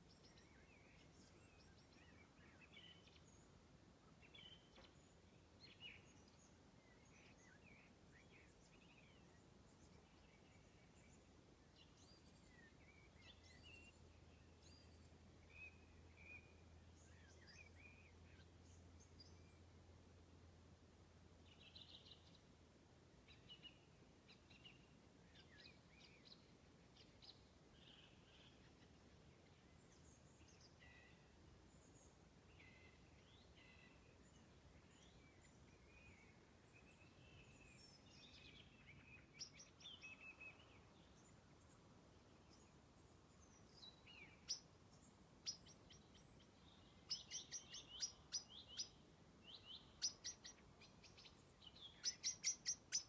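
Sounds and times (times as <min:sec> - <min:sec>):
birds chirping: 0:45.5 - 0:53.0.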